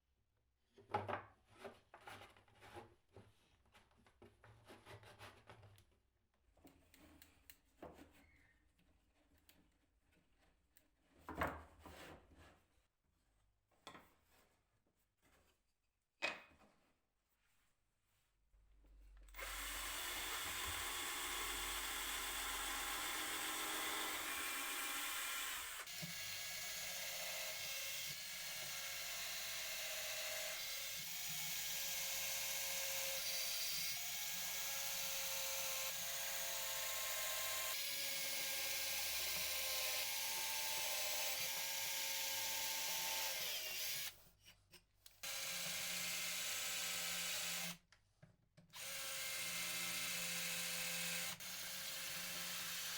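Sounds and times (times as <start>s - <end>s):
power tool motor whirring on wood: 19.4s - 44.1s, 48.8s - 52.9s.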